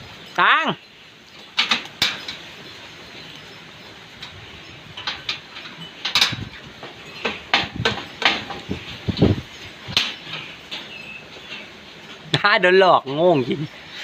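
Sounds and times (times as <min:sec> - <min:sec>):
wind hiss: 0:00.0 - 0:14.0
hard objects knocking and clattering: 0:05.0 - 0:11.0.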